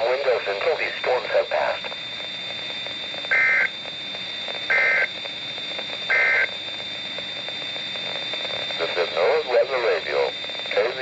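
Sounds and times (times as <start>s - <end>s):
radio hiss: 0.0s - 11.0s
two-tone data chirps: 3.3s - 3.7s, 4.7s - 5.1s, 6.0s - 6.6s.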